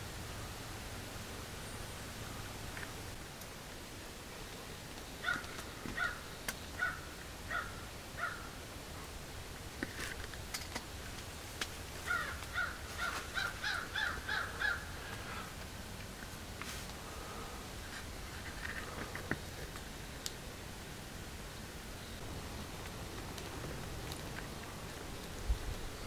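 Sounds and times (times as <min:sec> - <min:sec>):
bird calling harsh repeated notes: 0:05.2 - 0:08.6, 0:12.0 - 0:15.6.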